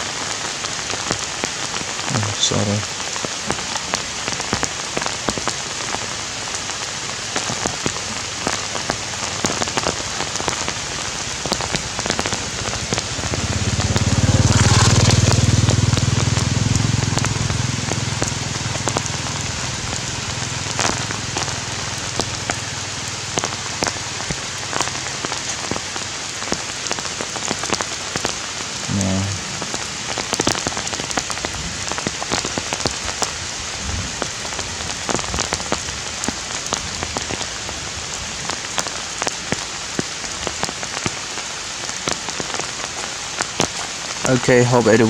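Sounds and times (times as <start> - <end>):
heavy rain falling: 0.0 - 45.0
low rumble: 11.2 - 23.5.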